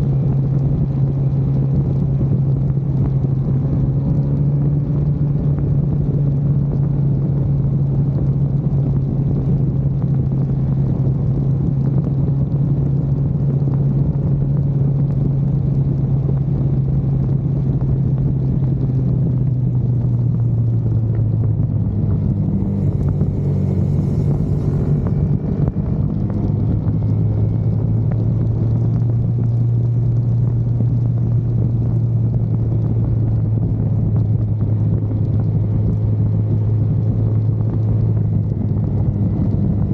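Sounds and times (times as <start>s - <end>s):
racing car engine drone: 0.0s - 39.9s.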